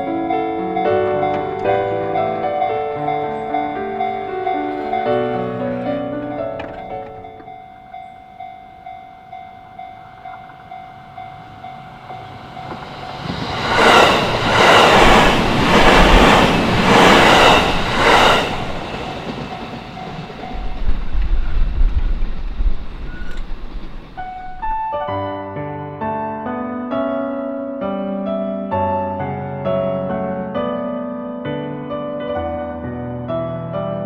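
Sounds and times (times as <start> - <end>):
low train rumble: 0.0 - 25.2
level crossing bell ringing: 0.5 - 13.2
train wheels clattering: 0.6 - 8.5, 9.6 - 24.9.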